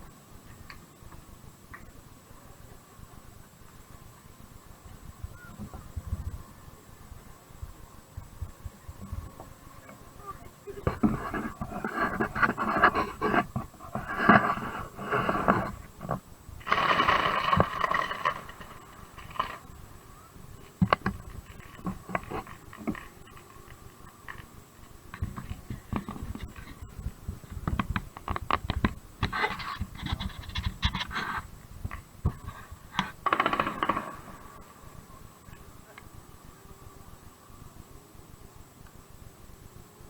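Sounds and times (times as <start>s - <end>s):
crackling hiss of fireworks: 0.0s - 40.0s
fireworks cracking and popping: 10.8s - 19.8s, 20.6s - 26.9s, 27.5s - 34.6s.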